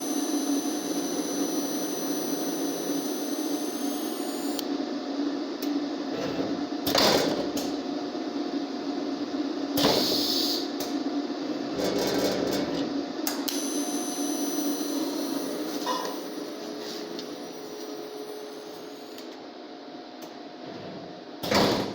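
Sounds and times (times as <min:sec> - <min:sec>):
thin high whine: 0:00.0 - 0:04.6, 0:13.5 - 0:19.2
welder electrical hum: 0:00.0 - 0:20.5.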